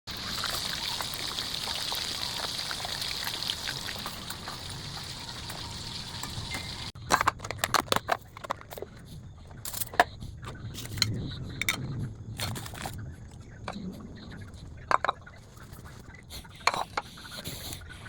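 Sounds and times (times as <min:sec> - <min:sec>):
food frying in hot oil: 0:00.1 - 0:07.0.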